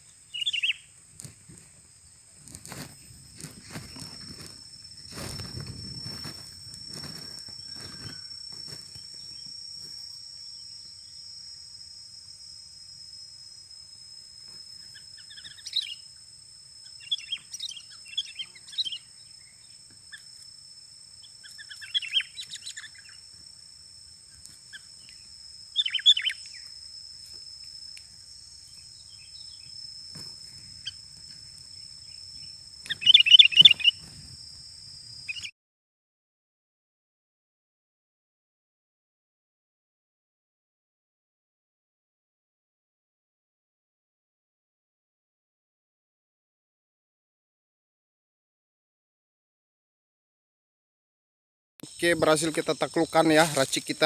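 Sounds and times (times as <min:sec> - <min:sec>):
birds chirping: 0:00.0 - 0:01.0, 0:14.7 - 0:16.2, 0:16.8 - 0:20.3, 0:21.2 - 0:23.4, 0:24.2 - 0:26.7, 0:28.4 - 0:34.2
high-pitched insect drone: 0:00.0 - 0:35.6, 0:51.8 - 0:54.0.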